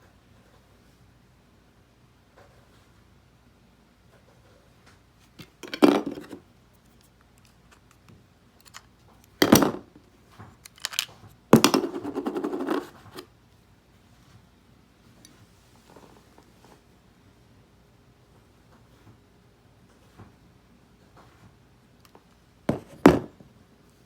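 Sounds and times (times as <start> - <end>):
plastic remote control rattling: 10.6 - 11.1.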